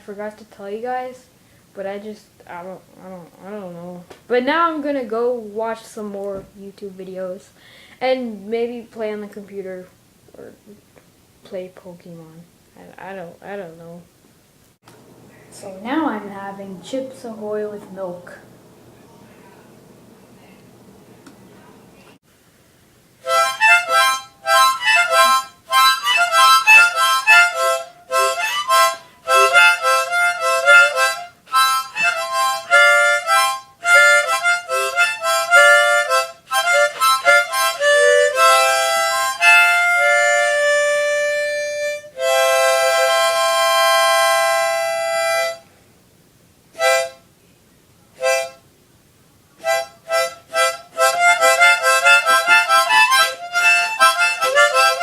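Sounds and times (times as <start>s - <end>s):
harmonica playing chords: 23.2s - 45.6s, 46.8s - 47.2s, 48.2s - 48.6s, 49.6s - 55.0s.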